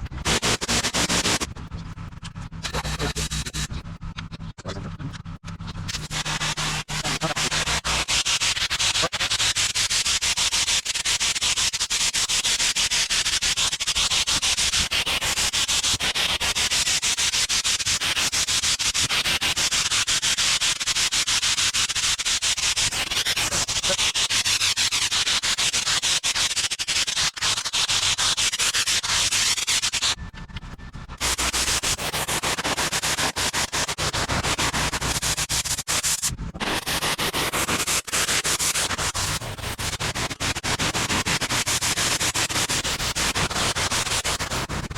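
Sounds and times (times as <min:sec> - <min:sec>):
pressure washer spray hissing: 0:00.3 - 0:01.4, 0:06.0 - 0:10.3, 0:19.6 - 0:30.1, 0:31.2 - 0:44.9.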